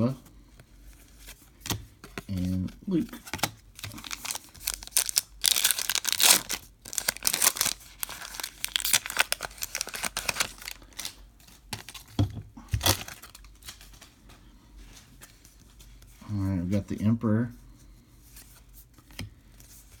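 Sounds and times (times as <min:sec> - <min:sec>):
card pack wrapper crinkling: 0:03.2 - 0:12.1, 0:12.8 - 0:14.1.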